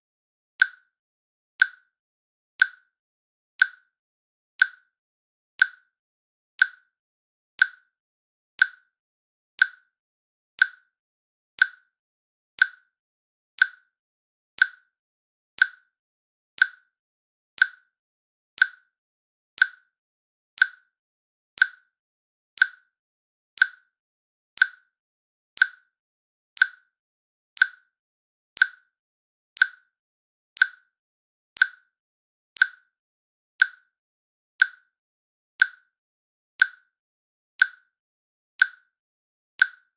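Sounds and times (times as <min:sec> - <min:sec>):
timer clicks: 0:00.6 - 0:00.9, 0:01.6 - 0:01.9, 0:02.6 - 0:02.9, 0:03.6 - 0:03.9, 0:04.6 - 0:04.9, 0:05.6 - 0:05.9, 0:06.6 - 0:06.9, 0:07.6 - 0:08.0, 0:08.6 - 0:09.0, 0:09.6 - 0:09.9, 0:10.6 - 0:11.0, 0:11.6 - 0:12.0, 0:12.6 - 0:13.0, 0:13.6 - 0:14.0, 0:14.6 - 0:15.0, 0:15.6 - 0:16.0, 0:16.6 - 0:17.0, 0:17.6 - 0:18.0, 0:18.6 - 0:19.0, 0:19.6 - 0:20.0, 0:20.6 - 0:21.0, 0:21.6 - 0:22.0, 0:22.6 - 0:23.0, 0:23.6 - 0:24.0, 0:24.6 - 0:25.0, 0:25.6 - 0:26.0, 0:26.6 - 0:27.0, 0:27.6 - 0:28.0, 0:28.6 - 0:29.0, 0:29.6 - 0:30.0, 0:30.6 - 0:31.0, 0:31.6 - 0:32.0, 0:32.6 - 0:33.0, 0:33.6 - 0:34.0, 0:34.6 - 0:35.0, 0:35.6 - 0:36.0, 0:36.6 - 0:37.0, 0:37.6 - 0:37.9, 0:38.6 - 0:38.9, 0:39.6 - 0:39.9.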